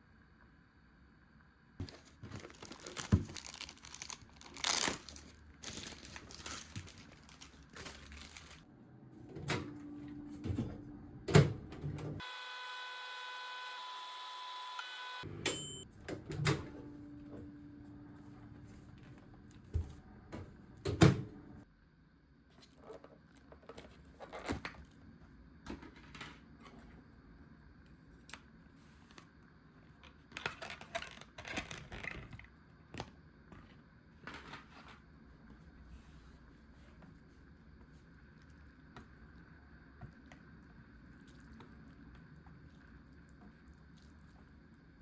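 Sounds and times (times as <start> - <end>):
food container rustling: 1.8 - 8.6
electronic hum: 12.2 - 15.8.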